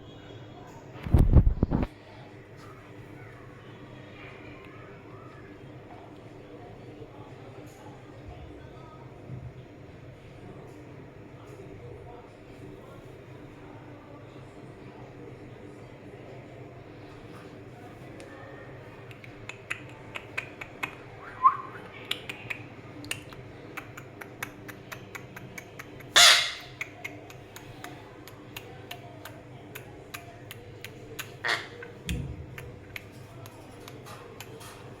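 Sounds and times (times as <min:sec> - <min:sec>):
parakeet squawking: 0:26.1 - 0:26.8, 0:31.4 - 0:32.0.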